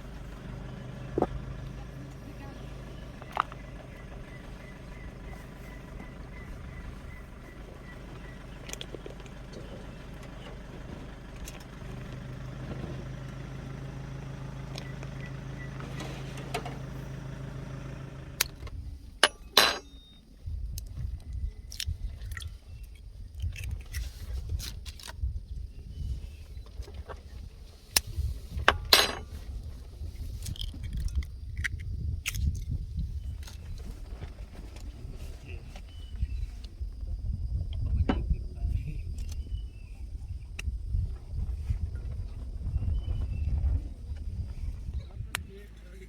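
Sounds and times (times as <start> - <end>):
car engine running: 0.0 - 20.0, 28.6 - 29.4.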